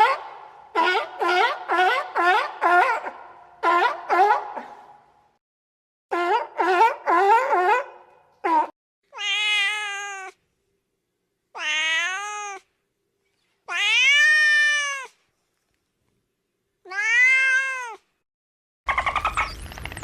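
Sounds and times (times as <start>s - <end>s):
cat meowing: 9.1s - 10.4s, 11.6s - 12.7s, 13.7s - 15.2s, 16.9s - 18.1s.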